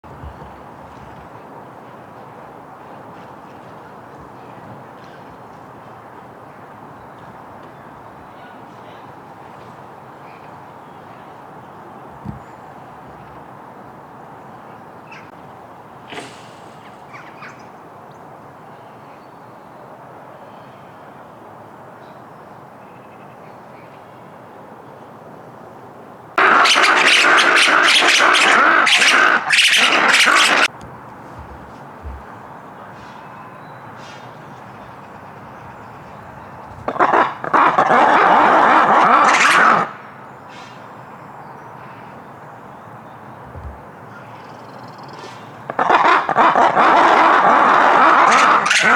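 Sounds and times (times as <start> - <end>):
steady outdoor hiss: 0.0 - 26.8, 27.7 - 48.7
lemurs calling harshly: 26.4 - 40.0, 45.2 - 48.9.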